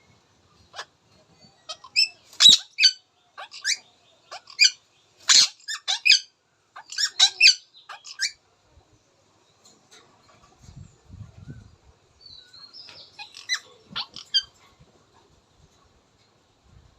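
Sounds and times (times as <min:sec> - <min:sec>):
parakeet chirping and squeaking: 0:01.7 - 0:08.4, 0:12.7 - 0:14.6.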